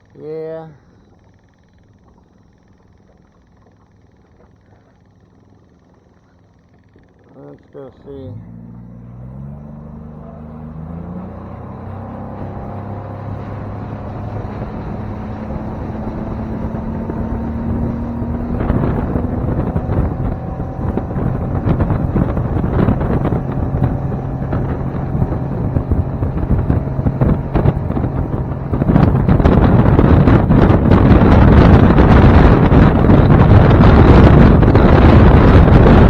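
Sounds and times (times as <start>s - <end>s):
outboard motor running: 0.0s - 36.0s
wind buffeting microphone: 10.3s - 36.0s.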